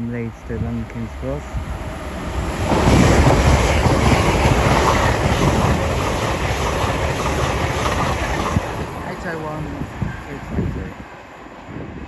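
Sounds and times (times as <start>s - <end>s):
high-speed train passing: 0.0s - 12.0s
train wheels clattering on track: 2.0s - 10.7s.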